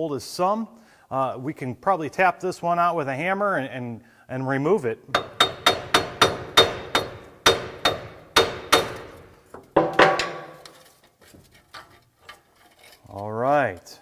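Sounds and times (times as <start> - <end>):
hammer striking metal: 5.1 - 9.2, 9.8 - 10.8.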